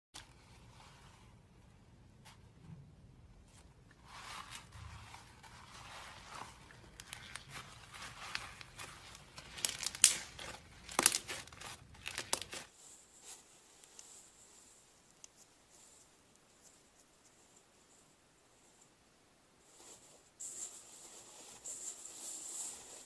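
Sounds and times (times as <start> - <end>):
sticky slime crackling: 4.7 - 12.7.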